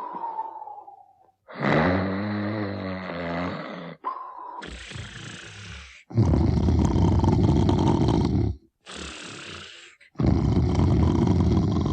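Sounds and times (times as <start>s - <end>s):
soft airy breath: 0.0s - 1.3s, 4.0s - 6.1s
cartoon bear snoring: 1.5s - 11.9s.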